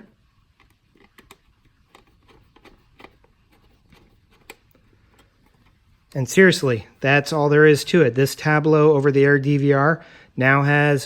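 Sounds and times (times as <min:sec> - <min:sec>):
screwdriver clicks and scrapes: 0:00.4 - 0:05.8.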